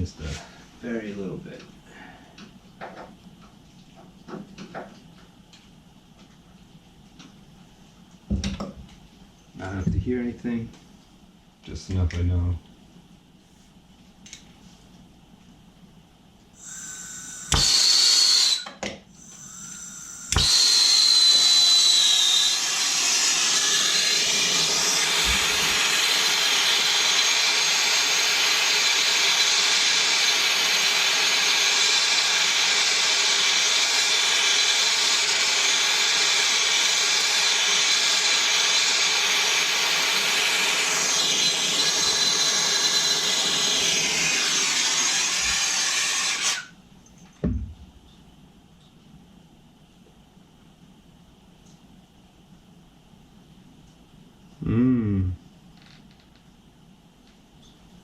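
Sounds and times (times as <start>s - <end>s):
gas torch flame hissing: 22.1s - 42.0s.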